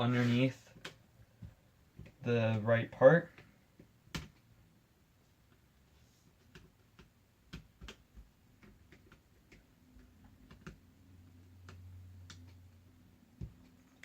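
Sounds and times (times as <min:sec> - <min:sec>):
small clicks and taps: 0:06.4 - 0:10.9, 0:11.5 - 0:12.8.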